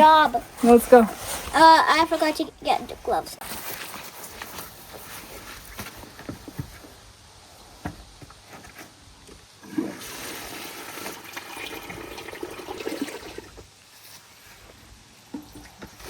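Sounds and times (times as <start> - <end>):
water running: 9.6 - 13.7.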